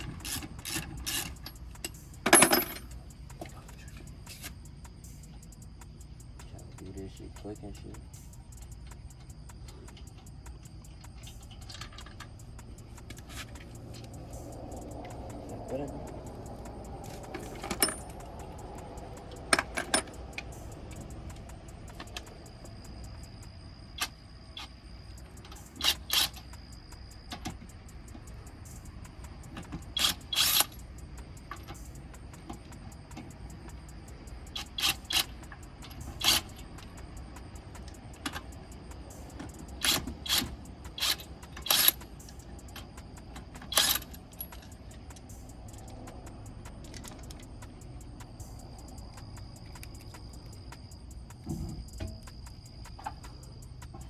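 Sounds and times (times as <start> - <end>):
metal hand tools clinking: 0.0 - 3.0, 17.0 - 18.3, 39.8 - 42.3, 43.6 - 44.8
sharp metallic clinks: 0.0 - 5.6, 6.7 - 23.4, 29.8 - 32.1, 34.4 - 54.0.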